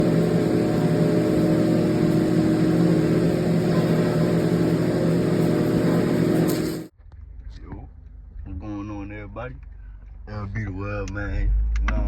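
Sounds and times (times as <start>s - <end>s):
mechanical drone: 0.0s - 6.9s.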